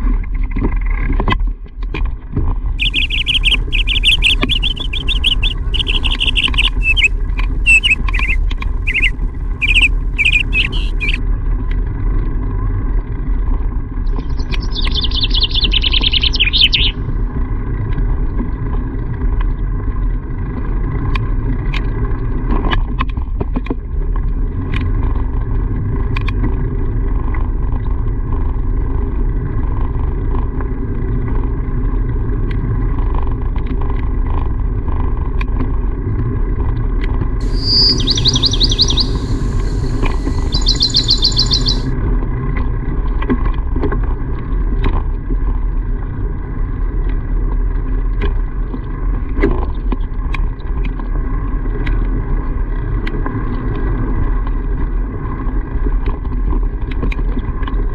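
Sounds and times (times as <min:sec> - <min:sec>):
steady low rumble: 0:02.6 - 0:18.7, 0:36.6 - 0:44.7
rapid high bird-like chirps: 0:02.8 - 0:11.2, 0:14.2 - 0:17.0, 0:37.4 - 0:41.9.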